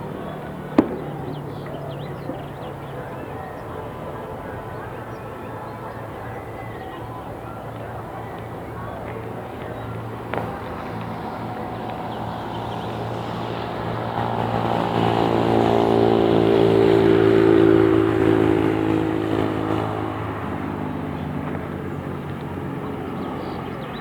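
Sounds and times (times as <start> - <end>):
vehicle driving past: 10.1 - 23.8.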